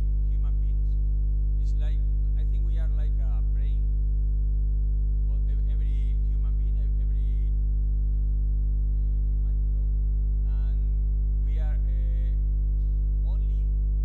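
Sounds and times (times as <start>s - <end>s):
electrical mains hum: 0.0s - 14.0s
muffled speech: 1.6s - 3.9s, 5.2s - 7.6s, 9.2s - 12.4s, 13.2s - 13.8s.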